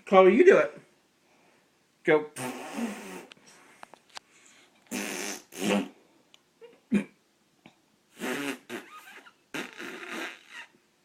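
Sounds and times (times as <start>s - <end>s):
raspberries blown with lips: 2.4s - 3.4s, 4.9s - 6.0s, 8.1s - 10.8s.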